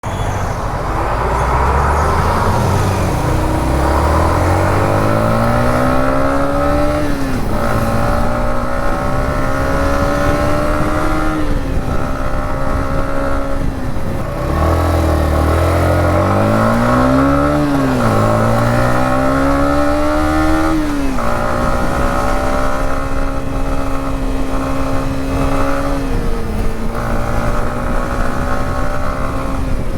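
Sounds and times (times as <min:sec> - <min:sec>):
motorcycle engine accelerating: 0:00.0 - 0:29.9.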